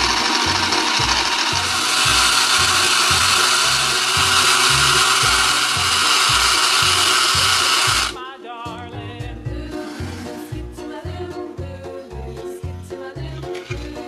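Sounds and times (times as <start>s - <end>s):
small motor whirring: 0.0s - 8.2s
music with steady beat: 0.0s - 14.0s.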